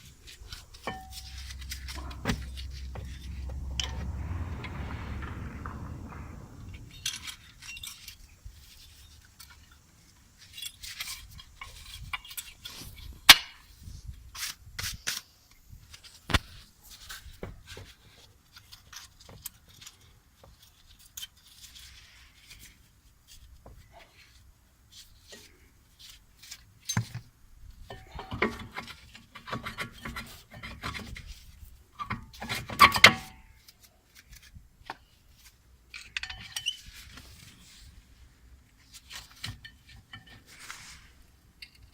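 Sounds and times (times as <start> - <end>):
scraping and rubbing of parts: 0.0 - 8.1, 27.9 - 41.9.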